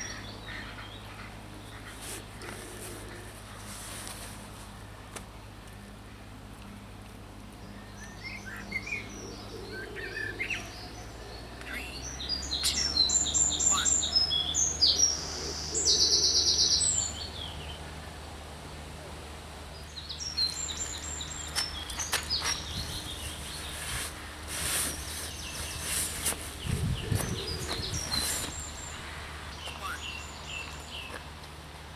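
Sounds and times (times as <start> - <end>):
small birds chirping: 7.6 - 18.1, 19.7 - 31.9
bird trill: 11.7 - 17.3, 27.0 - 31.2.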